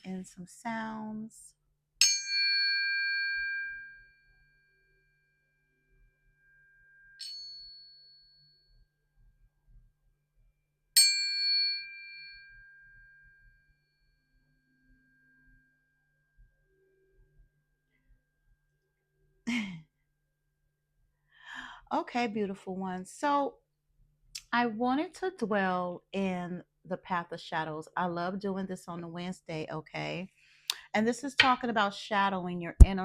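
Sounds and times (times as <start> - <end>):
small metal chime ringing: 6.8 - 8.9, 11.0 - 13.1.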